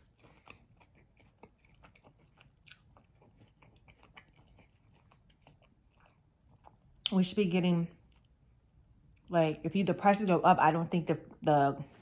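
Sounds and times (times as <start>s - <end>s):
chewing food: 0.0s - 9.3s.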